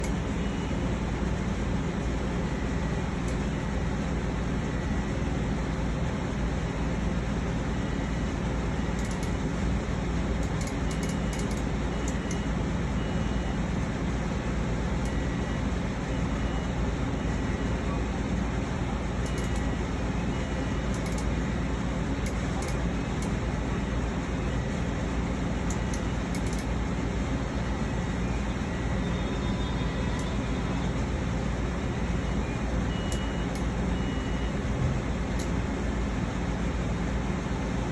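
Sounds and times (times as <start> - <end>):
short faint beeps: 10.6 - 13.6, 15.1 - 17.9, 19.2 - 21.3, 32.2 - 34.6.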